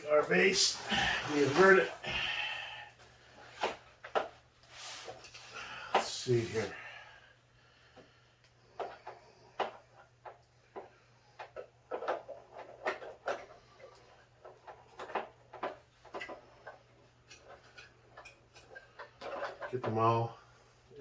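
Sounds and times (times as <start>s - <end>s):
plastic parts clicking and knocking: 8.7s - 20.0s.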